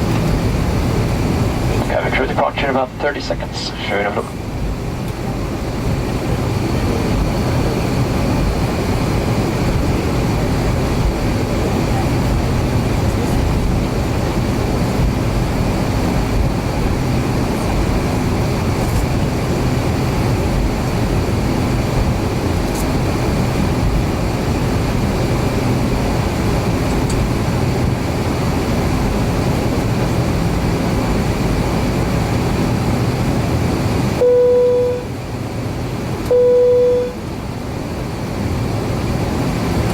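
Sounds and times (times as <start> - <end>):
faint engine whines: 0.0 - 39.9
jet engine cabin rumble: 0.0 - 39.9
short loud beep: 34.2 - 35.1, 36.3 - 37.2.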